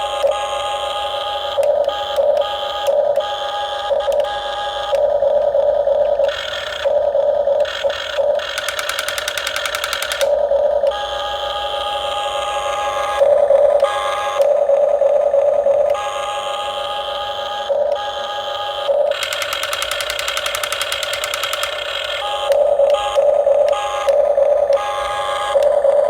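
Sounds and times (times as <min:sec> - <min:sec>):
electric whine of model machines: 0:00.0 - 0:26.0.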